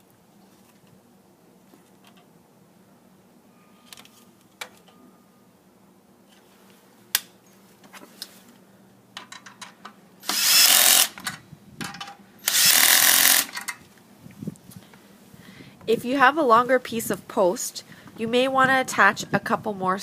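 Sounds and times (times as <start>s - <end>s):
power drill driving screws: 10.2s - 11.2s, 12.4s - 13.6s.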